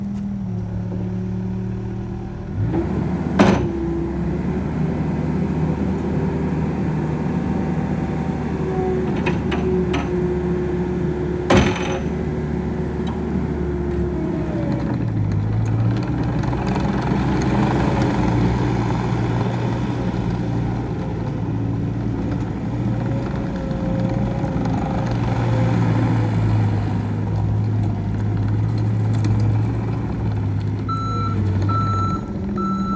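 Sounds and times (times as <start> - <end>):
diesel engine running: 0.0 - 32.9
metal clank: 9.1 - 10.4, 11.5 - 12.4
reversing alarm beeping: 30.9 - 32.9.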